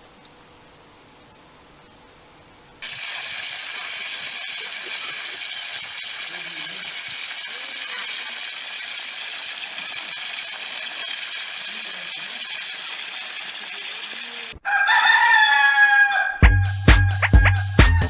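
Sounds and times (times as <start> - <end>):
steady hiss: 0.0 - 14.6
rooster crowing: 14.6 - 18.0.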